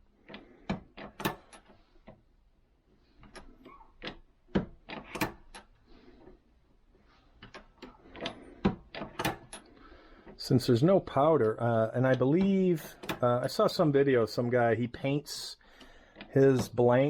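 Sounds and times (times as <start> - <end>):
reloading press clicks and clunks: 0.3 - 1.8, 3.2 - 5.7, 7.4 - 10.4, 12.1 - 13.3.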